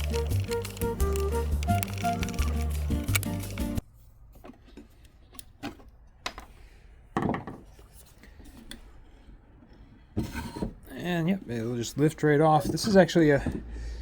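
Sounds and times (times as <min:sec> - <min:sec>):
background music: 0:00.0 - 0:03.8
wood and hard parts clicking: 0:00.0 - 0:03.8.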